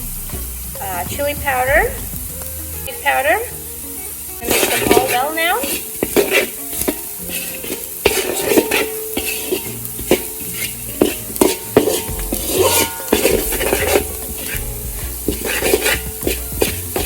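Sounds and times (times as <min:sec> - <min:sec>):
spices sizzling in oil: 0:00.0 - 0:17.0
utensil stirring and scraping: 0:04.4 - 0:17.0
utensil clinking against pan: 0:04.5 - 0:17.0.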